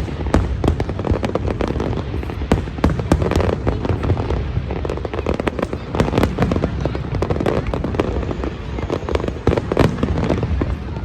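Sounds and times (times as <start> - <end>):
fireworks cracking and banging: 0.0 - 11.0.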